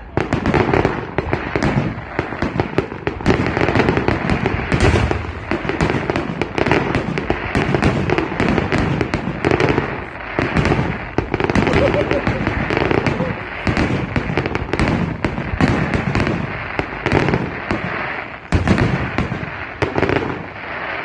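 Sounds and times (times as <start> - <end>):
fireworks barrage of rapid bangs: 0.0 - 21.0
crackling shell bursts: 10.0 - 14.6.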